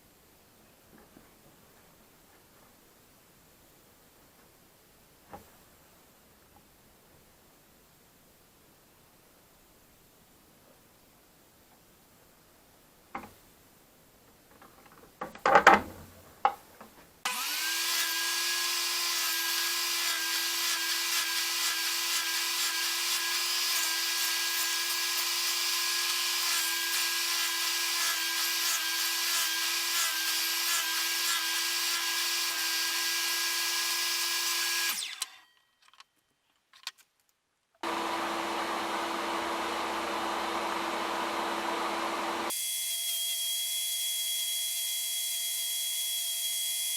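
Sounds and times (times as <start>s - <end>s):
electric power tool motor running: 37.8s - 42.7s.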